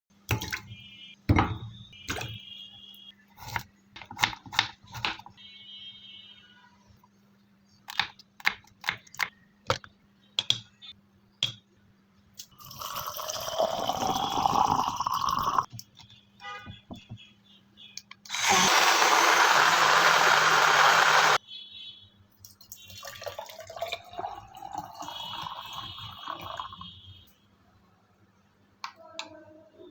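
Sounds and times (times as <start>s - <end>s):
liquid pouring into container: 12.6s - 15.6s, 22.7s - 26.8s
electric blender running: 18.3s - 21.4s.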